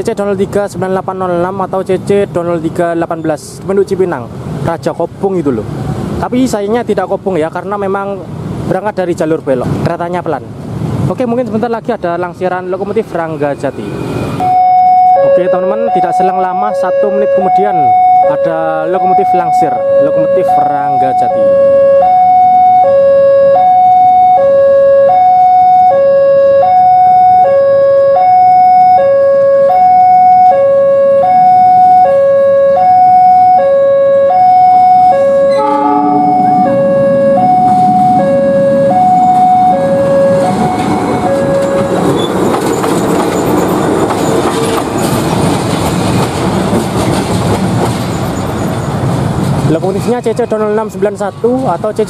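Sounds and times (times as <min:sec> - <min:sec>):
locomotive running and rail noise: 0:00.0 - 0:52.0
two-note electronic warning alarm: 0:14.4 - 0:42.4.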